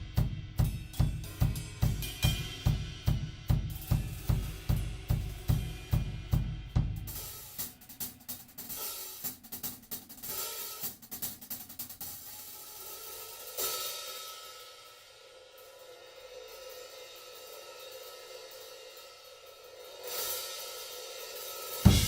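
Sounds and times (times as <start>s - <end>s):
drum kit playing: 0.0s - 12.2s, 21.7s - 22.0s.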